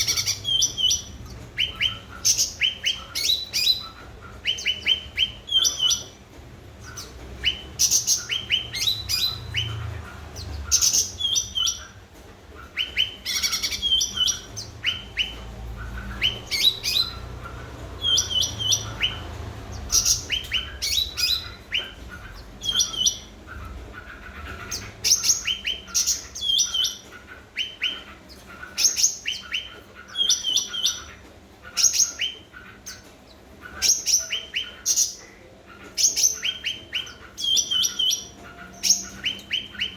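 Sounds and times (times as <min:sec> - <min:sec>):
songbird chirping: 0:00.0 - 0:39.9.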